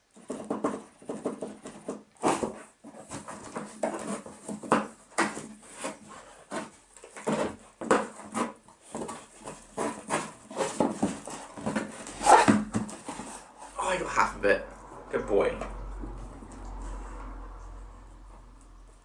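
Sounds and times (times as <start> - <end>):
dog pawing at cardboard box: 0.1 - 14.1.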